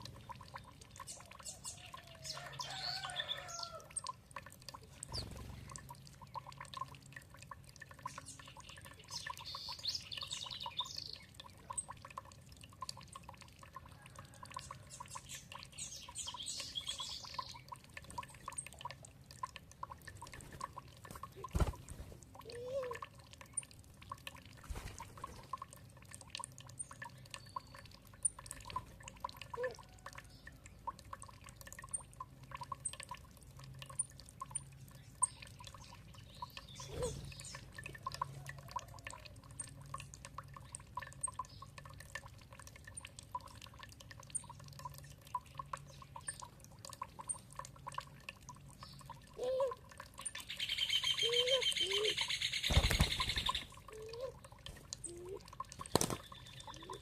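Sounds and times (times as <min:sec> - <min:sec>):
water dripping and trickling: 0:00.0 - 0:57.0
birds chirping: 0:07.9 - 0:11.8, 0:14.6 - 0:18.9, 0:34.4 - 0:39.1, 0:50.2 - 0:57.0.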